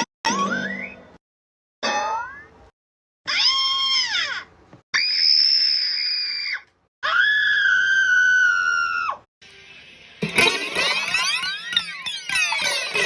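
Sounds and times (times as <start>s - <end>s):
high-pitched screams: 5.0s - 9.2s.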